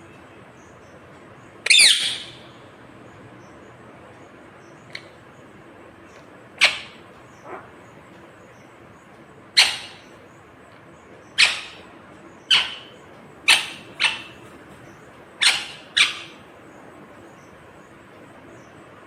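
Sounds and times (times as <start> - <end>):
parakeet shrill calls: 1.6 - 2.4, 6.6 - 7.8, 9.6 - 10.2, 11.3 - 16.4.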